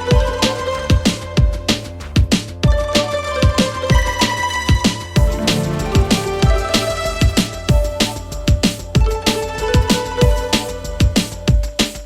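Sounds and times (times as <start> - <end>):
deep kick drum: 5.2 - 8.0
synth melody: 5.2 - 8.1.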